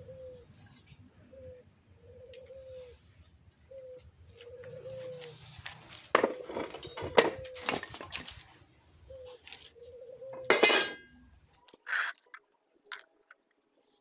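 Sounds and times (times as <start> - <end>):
dove cooing: 0.0 - 8.1, 9.0 - 11.1
metallic clinks and knocks: 6.2 - 8.1, 10.4 - 11.2.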